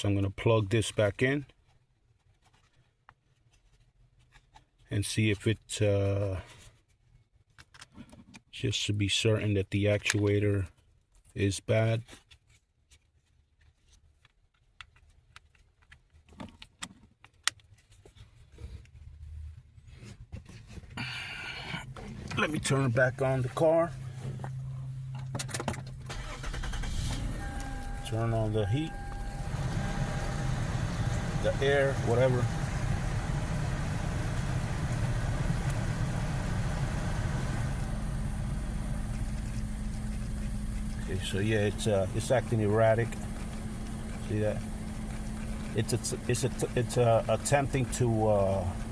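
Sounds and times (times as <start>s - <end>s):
clicks and rattles of hands working: 7.4s - 8.5s, 12.1s - 18.3s
car engine idling: 21.0s - 48.9s
blower fan hum: 26.0s - 48.9s.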